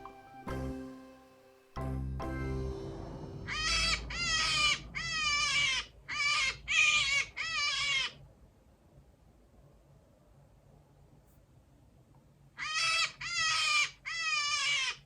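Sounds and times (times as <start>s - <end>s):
rabbit high wavering cries: 3.5s - 8.2s, 12.6s - 15.0s.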